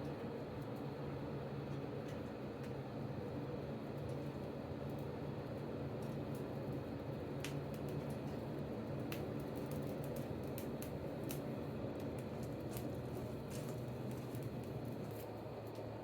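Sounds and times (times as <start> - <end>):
forge humming: 0.0 - 16.0.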